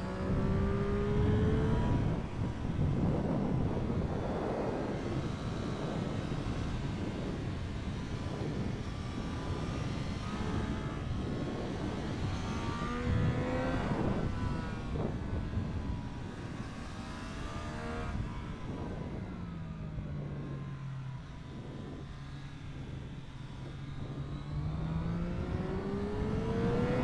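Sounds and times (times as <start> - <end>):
motorcycle engine accelerating: 0.0 - 7.3, 23.8 - 27.0
wind rush: 0.0 - 27.0.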